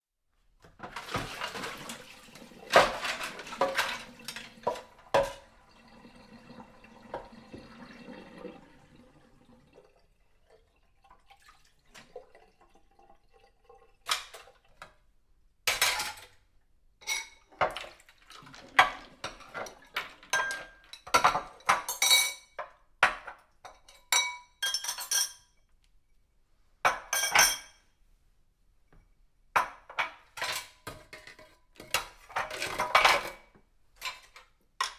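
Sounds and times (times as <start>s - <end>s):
dishes clattering and clinking: 0.7s - 5.6s, 15.7s - 16.4s, 17.0s - 25.6s, 26.9s - 27.8s, 29.6s - 34.9s
water running and splashing: 1.0s - 14.6s.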